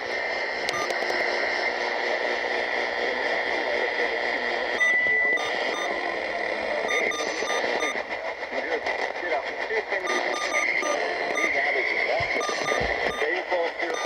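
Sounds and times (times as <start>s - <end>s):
radio static hiss: 0.0s - 14.0s
constant high tone: 6.8s - 8.0s, 10.0s - 14.0s
short beeps: 10.1s - 11.5s.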